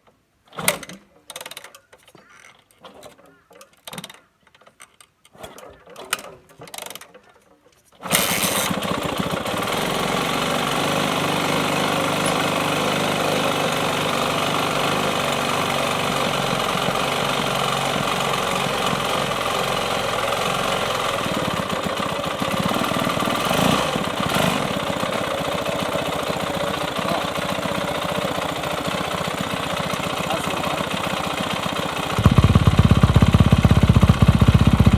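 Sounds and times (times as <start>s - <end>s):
dirt bike engine running: 8.2s - 34.9s.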